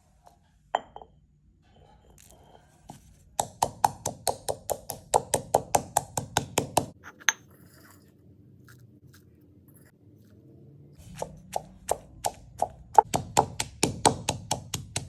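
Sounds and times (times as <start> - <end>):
knife chopping on cutting board: 11.1 - 15.0.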